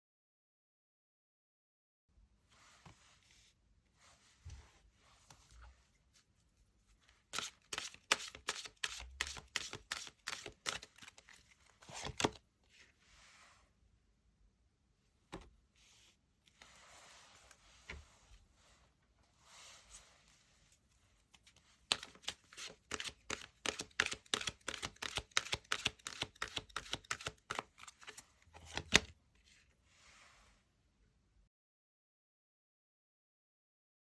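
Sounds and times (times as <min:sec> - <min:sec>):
cards sliding and rustling: 0:07.2 - 0:12.4, 0:21.4 - 0:30.4.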